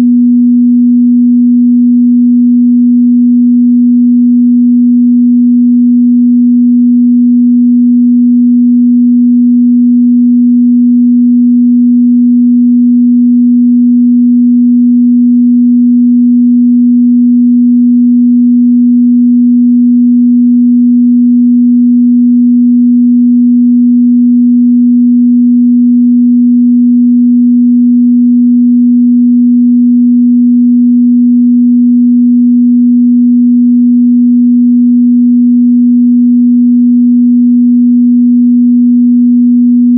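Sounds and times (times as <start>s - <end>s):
sine-wave test tone: 0.0s - 39.9s.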